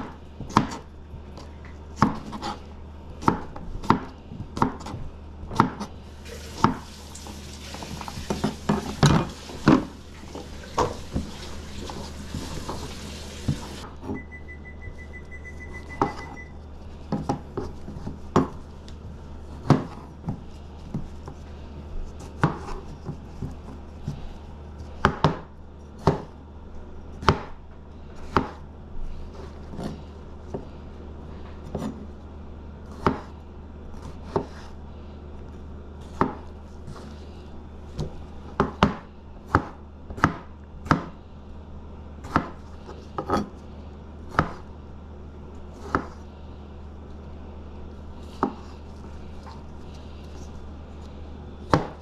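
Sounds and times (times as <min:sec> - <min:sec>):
steady low hum: 0:00.0 - 0:52.0
knife chopping on cutting board: 0:02.0 - 0:02.6, 0:03.2 - 0:05.9, 0:27.2 - 0:27.6, 0:28.2 - 0:28.6, 0:33.0 - 0:33.3, 0:38.0 - 0:41.2, 0:42.2 - 0:42.6, 0:44.3 - 0:44.7, 0:45.8 - 0:46.2, 0:48.3 - 0:48.7, 0:51.6 - 0:52.0.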